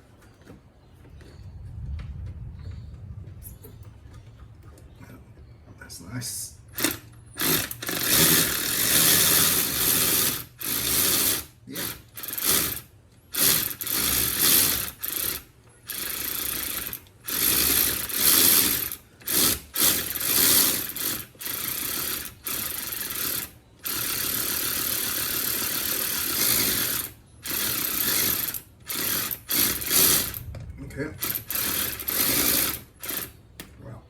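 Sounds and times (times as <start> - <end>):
ratchet wrench ratcheting: 6.8 - 30.4, 31.2 - 33.4.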